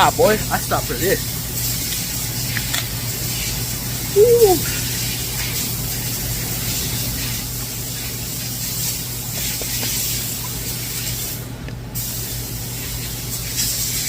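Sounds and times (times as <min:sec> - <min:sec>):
spraying hiss: 0:03.2 - 0:14.0.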